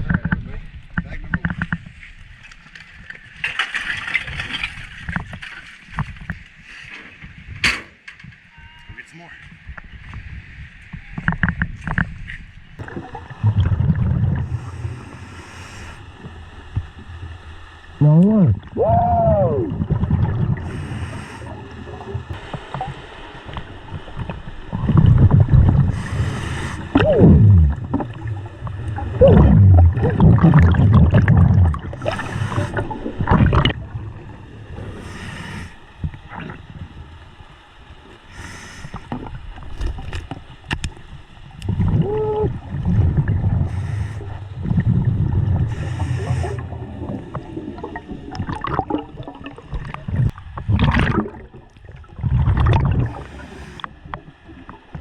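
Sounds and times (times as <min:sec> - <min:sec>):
bubbling exhale rumble: 0:11.0 - 0:55.0
diver breathing through regulator: 0:13.4 - 0:16.5, 0:19.9 - 0:22.4, 0:25.7 - 0:33.8, 0:34.6 - 0:36.0, 0:38.3 - 0:39.3, 0:42.6 - 0:47.4, 0:52.9 - 0:54.0.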